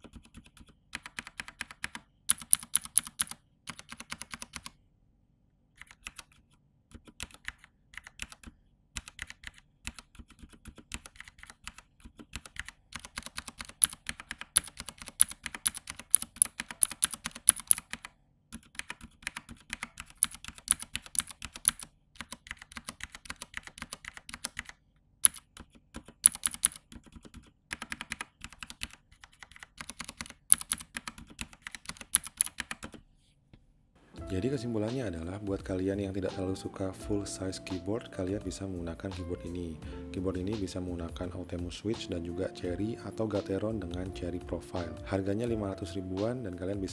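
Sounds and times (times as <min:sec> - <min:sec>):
mechanical keyboard typing: 0:00.0 - 0:04.8, 0:05.8 - 0:33.0.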